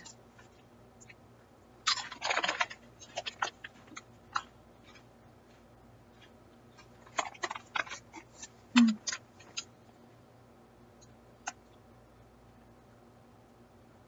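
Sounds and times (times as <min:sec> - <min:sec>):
crunching snacks being chewed: 0:01.8 - 0:05.0, 0:06.2 - 0:09.7.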